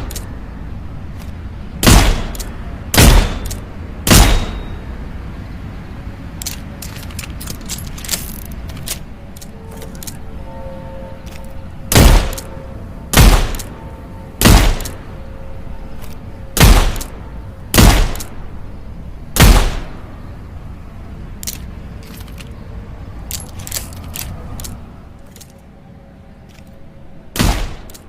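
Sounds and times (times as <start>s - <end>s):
revolver gunshots: 1.8s - 3.5s, 4.1s - 4.7s, 11.9s - 12.4s, 13.1s - 13.7s, 14.4s - 15.0s, 16.6s - 17.1s, 17.8s - 18.3s, 19.4s - 20.0s, 27.4s - 27.9s.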